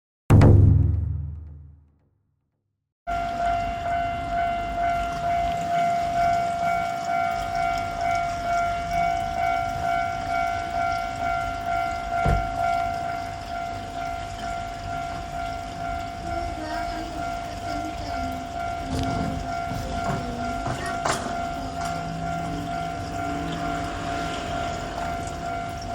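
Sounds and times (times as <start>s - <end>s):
low thump: 0.3s - 1.8s, 12.2s - 12.5s
level crossing bell ringing: 3.1s - 25.9s.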